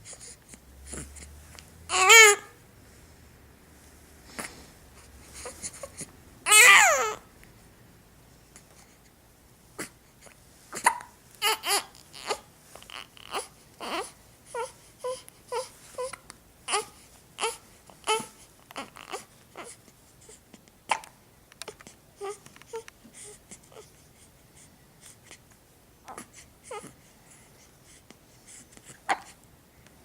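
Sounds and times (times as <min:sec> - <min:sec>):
baby hiccuping: 0:01.9 - 0:02.5, 0:05.7 - 0:07.2, 0:10.7 - 0:12.4, 0:20.9 - 0:21.2, 0:29.1 - 0:29.4
baby squeaking: 0:01.9 - 0:02.5, 0:06.5 - 0:07.2.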